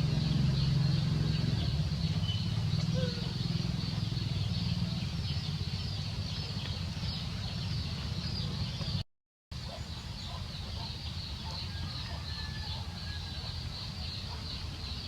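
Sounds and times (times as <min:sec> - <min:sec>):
outdoor background noise: 0:00.0 - 0:15.0
faint chicken clucks: 0:09.7 - 0:14.5.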